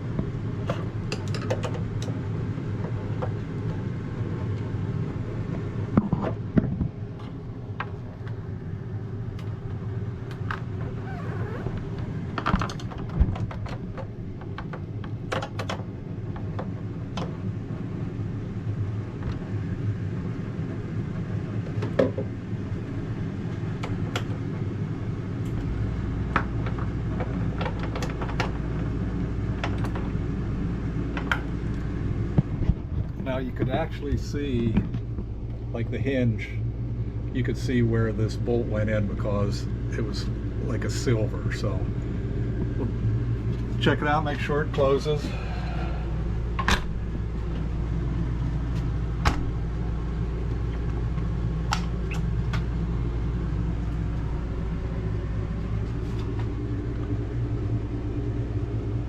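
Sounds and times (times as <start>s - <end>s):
deeper hum: 0.0s - 15.3s, 15.9s - 59.0s
steady low hum: 0.0s - 59.0s
light clicks and knocks of tools: 0.7s - 2.2s.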